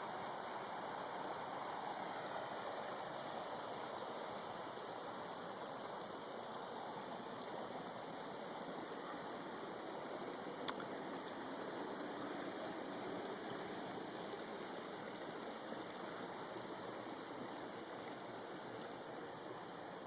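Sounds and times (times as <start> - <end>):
creek water rushing: 0.0 - 20.0
sharp click: 10.6 - 10.9.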